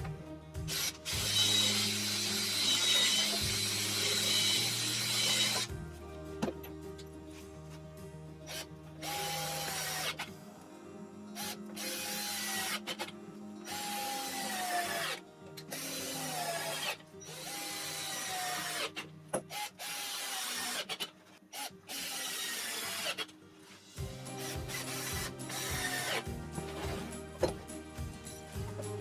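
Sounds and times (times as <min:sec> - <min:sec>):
power drill running: 0:00.0 - 0:05.8, 0:24.0 - 0:29.0.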